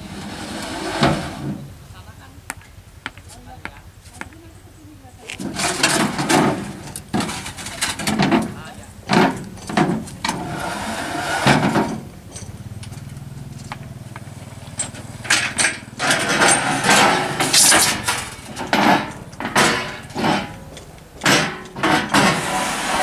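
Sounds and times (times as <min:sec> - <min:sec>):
engine idling: 0:00.0 - 0:23.0
loud noisy bursts: 0:05.4 - 0:12.2, 0:14.3 - 0:23.0.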